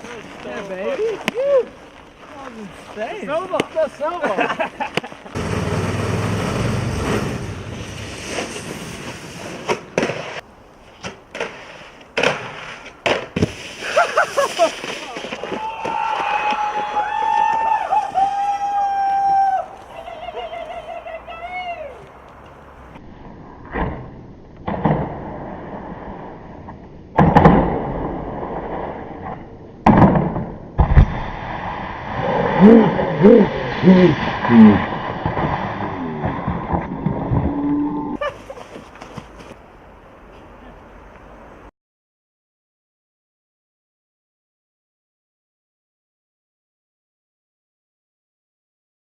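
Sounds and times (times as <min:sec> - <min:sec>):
snowboard scraping on snow: 0:00.0 - 0:15.6.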